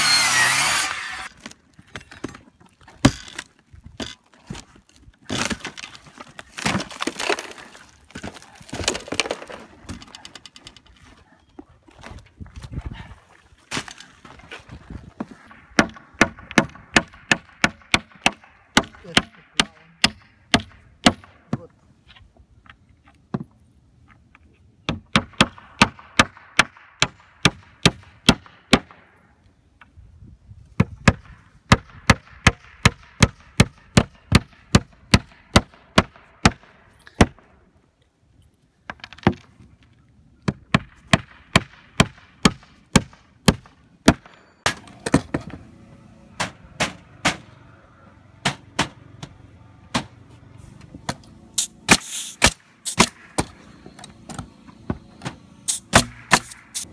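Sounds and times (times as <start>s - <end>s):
hammer driving roofing nails: 51.1s - 56.9s.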